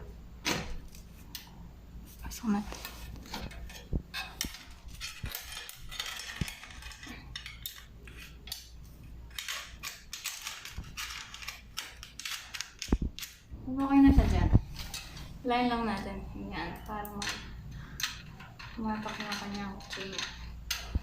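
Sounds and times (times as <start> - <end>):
bike chain clinking and rattling: 3.5 - 13.4.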